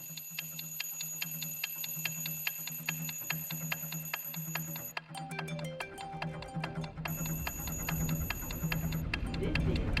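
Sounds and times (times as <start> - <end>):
clock-like ticking beat: 0.0 - 10.0
high steady tone: 7.0 - 9.8.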